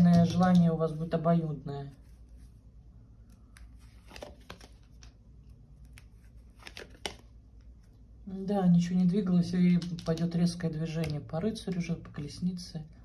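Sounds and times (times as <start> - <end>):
cards clicking and rustling: 0.0 - 0.9, 3.3 - 5.2, 5.8 - 7.8, 9.6 - 11.9
low room hum: 0.0 - 13.0.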